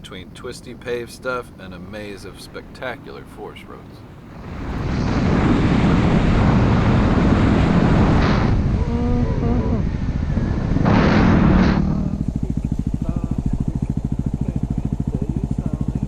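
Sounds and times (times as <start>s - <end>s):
wind rush on microphone: 4.0s - 16.0s
motorcycle engine running: 8.8s - 16.0s.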